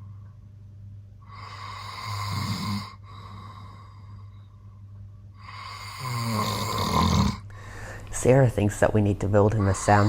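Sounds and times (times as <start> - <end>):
man snoring loudly: 1.3 - 3.9, 5.4 - 7.4, 9.7 - 10.0.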